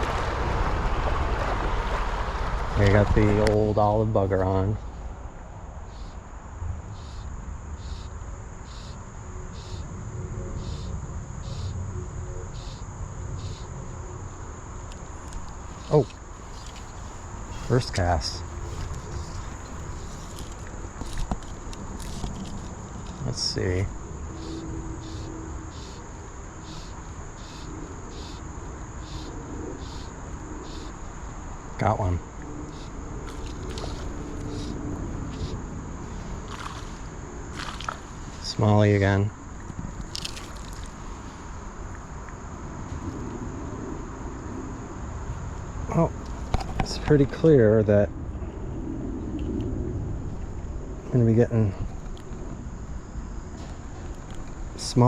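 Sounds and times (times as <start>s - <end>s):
creek water rushing: 0.0s - 4.7s
crickets buzzing and chirping: 0.0s - 55.0s
low rushing background: 0.0s - 55.0s
insect high-pitched trill: 2.8s - 55.0s.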